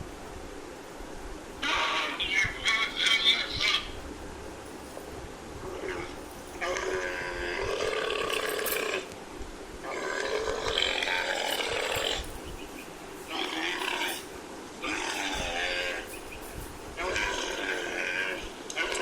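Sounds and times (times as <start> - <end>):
camel calling: 1.6 - 4.0, 5.6 - 9.2, 9.8 - 19.0.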